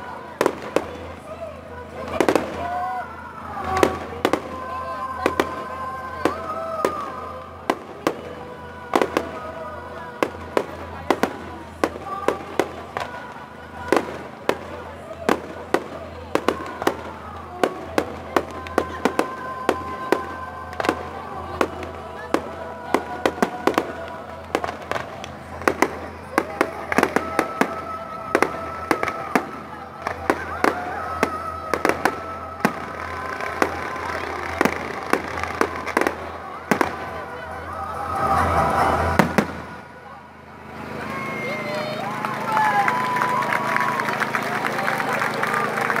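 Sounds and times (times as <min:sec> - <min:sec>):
firecrackers banging: 0:00.0 - 0:46.0.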